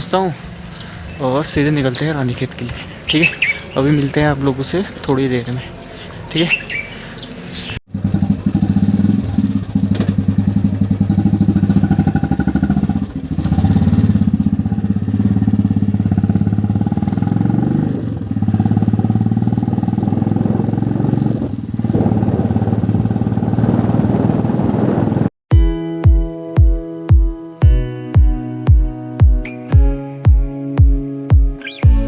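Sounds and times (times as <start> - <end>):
motorcycle engine running: 0.0 - 6.1, 7.0 - 25.3.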